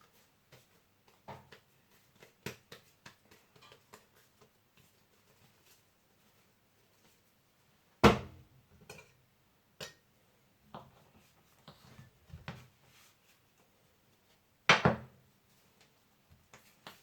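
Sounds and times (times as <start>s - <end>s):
knocks on a worktop: 8.0s - 8.4s, 14.7s - 15.1s.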